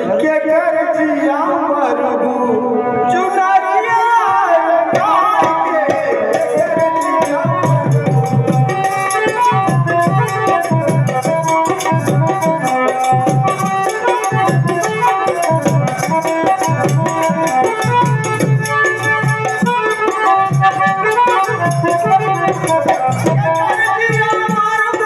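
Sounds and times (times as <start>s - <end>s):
steady drum beat: 5.0s - 25.0s.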